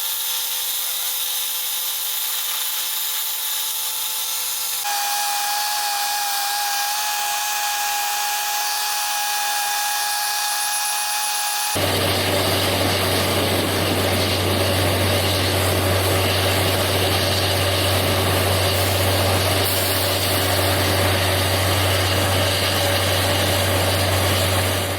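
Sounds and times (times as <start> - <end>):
high machinery whine: 4.4 - 24.9
dense machinery drone: 11.5 - 24.9.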